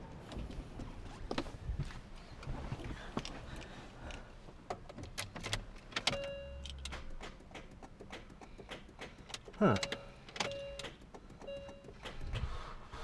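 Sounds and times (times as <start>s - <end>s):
car door and control clicks: 4.6s - 12.5s.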